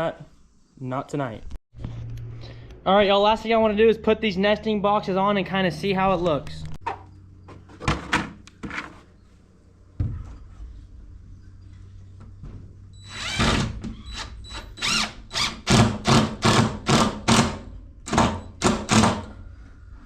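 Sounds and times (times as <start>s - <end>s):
power drill driving screws: 13.0s - 17.5s.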